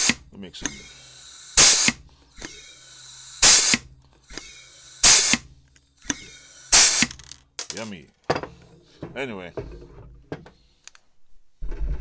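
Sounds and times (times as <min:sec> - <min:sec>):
short hiss of air: 0:00.0 - 0:07.2
rivet squeezer click: 0:00.0 - 0:07.3.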